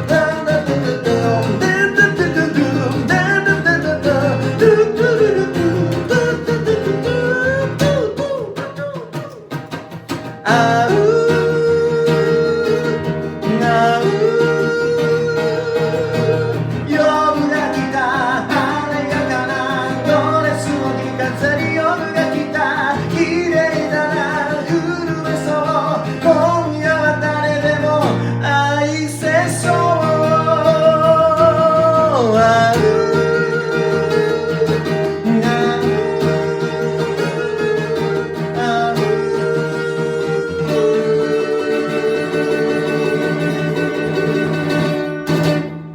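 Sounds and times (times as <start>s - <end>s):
acoustic guitar: 0.0s - 45.9s
person singing long wavering notes: 10.5s - 28.1s, 28.7s - 44.0s.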